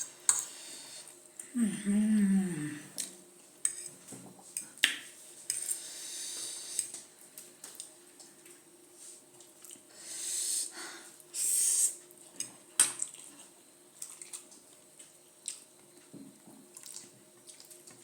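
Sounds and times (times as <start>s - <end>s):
chewing: 12.3s - 16.1s, 16.7s - 18.0s.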